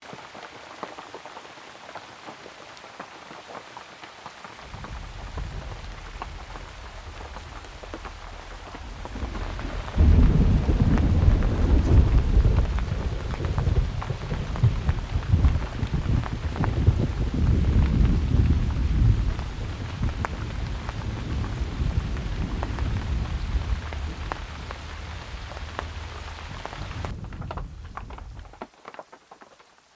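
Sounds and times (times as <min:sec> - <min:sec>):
campfire crackling: 0:04.6 - 0:29.1
low rumble: 0:04.7 - 0:28.6.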